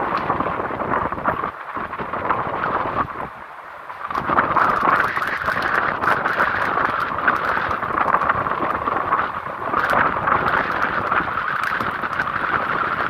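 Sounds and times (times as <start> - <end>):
rain hissing: 3.9 - 13.0
raindrops ticking: 4.0 - 13.0.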